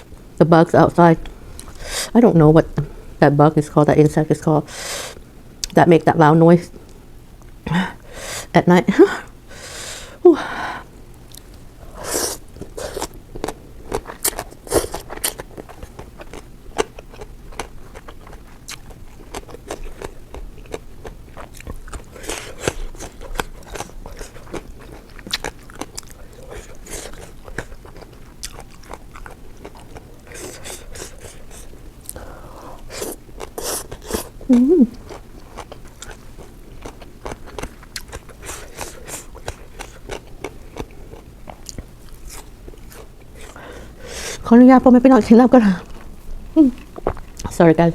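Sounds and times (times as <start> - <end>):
person chewing crunchy food: 11.1 - 44.4, 45.8 - 47.6.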